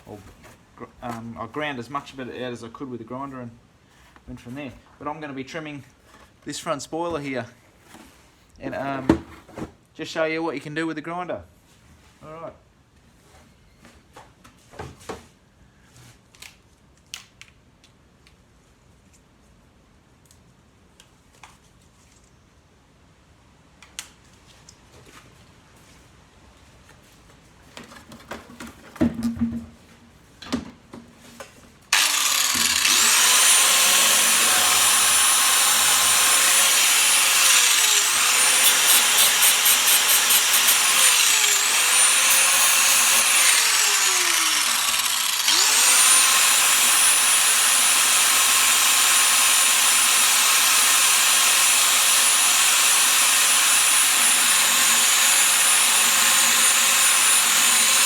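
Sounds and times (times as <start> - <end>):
angle grinder whining: 31.9 - 58.0.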